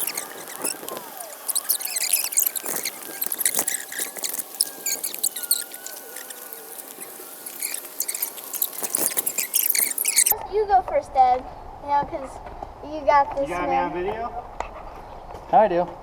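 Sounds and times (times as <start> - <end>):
footsteps through brush: 0.0 - 10.4
leaves rustling: 0.0 - 10.4
twigs crackling: 0.0 - 10.4.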